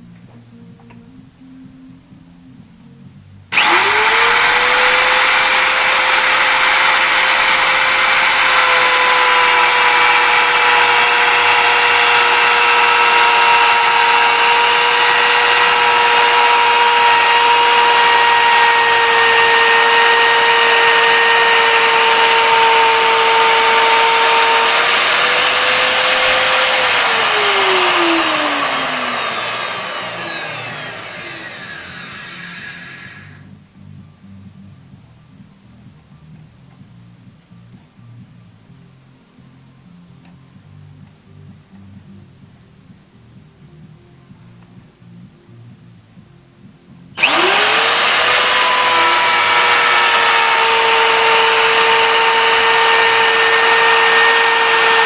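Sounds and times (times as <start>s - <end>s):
wood router motor whining: 3.5s - 33.6s, 47.2s - 55.0s.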